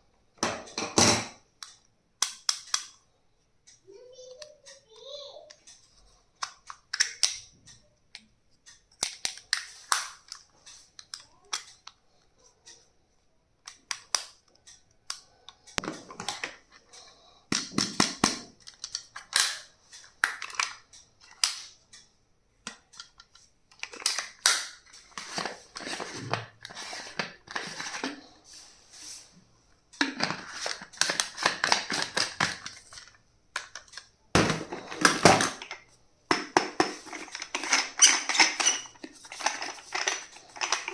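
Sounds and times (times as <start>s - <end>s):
plastic items clicking: 6.4s - 12.0s, 13.6s - 16.9s, 17.5s - 21.8s, 22.6s - 28.3s, 30.0s - 40.9s.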